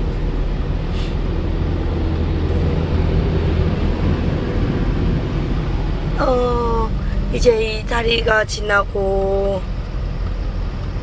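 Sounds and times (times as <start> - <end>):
low engine drone: 0.0 - 11.0.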